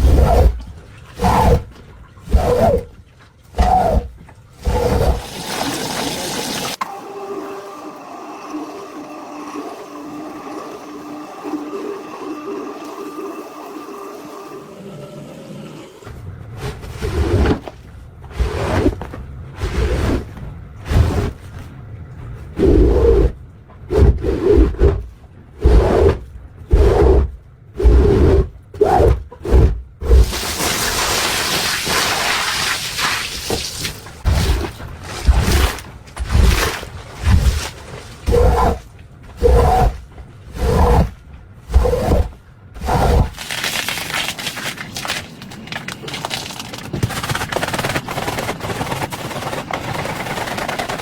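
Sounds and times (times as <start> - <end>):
water rushing and splashing: 30.2 - 38.8.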